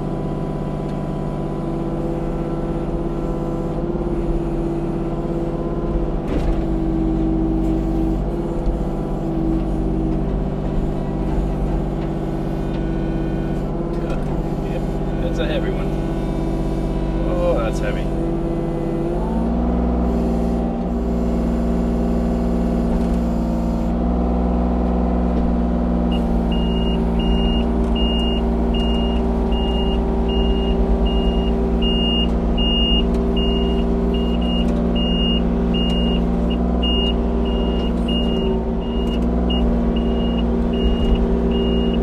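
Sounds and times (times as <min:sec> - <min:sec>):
excavator diesel engine: 0:00.0 - 0:42.0
travel alarm beeping: 0:26.1 - 0:42.0.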